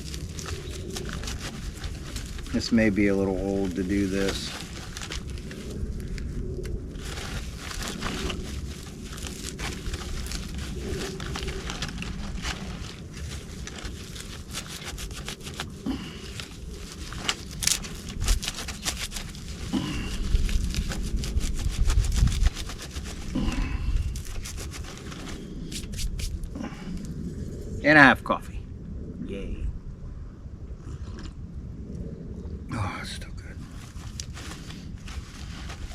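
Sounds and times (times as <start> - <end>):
bark crackling and rustling: 0.0 - 23.4, 24.2 - 26.4, 33.7 - 35.9.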